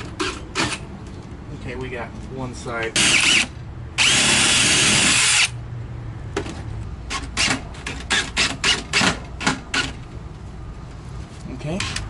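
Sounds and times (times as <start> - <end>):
power drill driving screws: 3.0 - 5.6.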